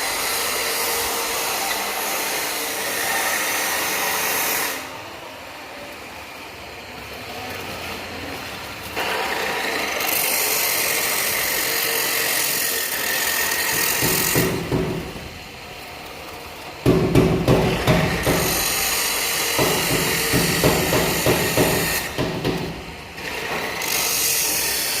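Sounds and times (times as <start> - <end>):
loud knocks: 13.7 - 15.4, 16.8 - 18.8, 19.5 - 23.7
air tool hissing and whining: 16.8 - 25.0.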